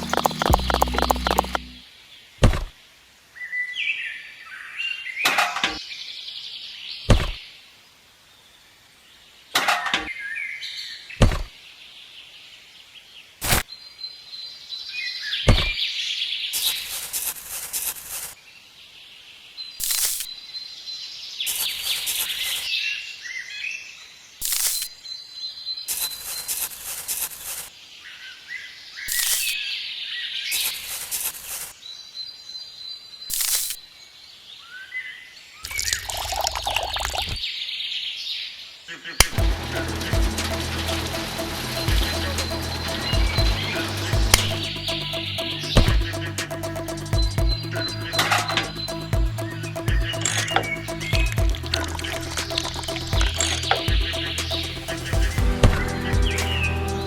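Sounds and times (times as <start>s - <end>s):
birds chirping: 0.0s - 1.8s, 39.1s - 57.0s.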